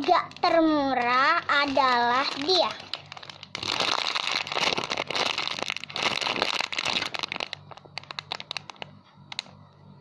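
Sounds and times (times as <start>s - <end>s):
squishy toy crinkling: 0.0s - 9.5s.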